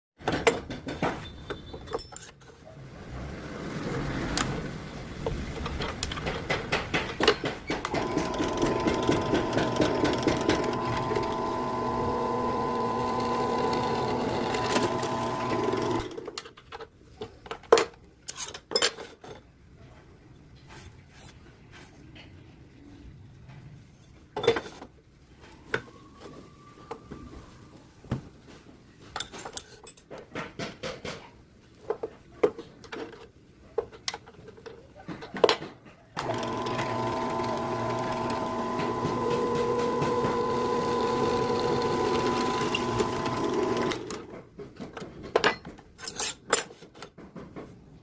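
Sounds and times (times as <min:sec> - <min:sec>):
electric drill whining: 0:07.9 - 0:16.2, 0:36.2 - 0:44.2.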